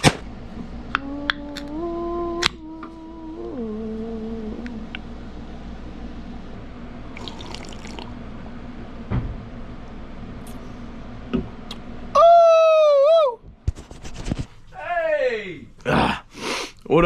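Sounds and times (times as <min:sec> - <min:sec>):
loud wavering pitched tone: 0:01.0 - 0:05.0.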